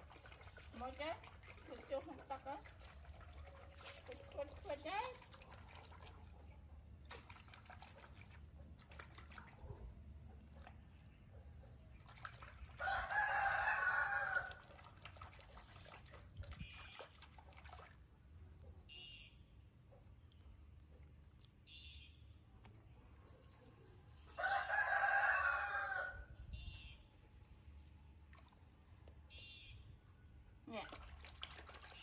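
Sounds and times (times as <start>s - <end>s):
rooster crowing: 12.8s - 14.6s, 24.4s - 26.3s.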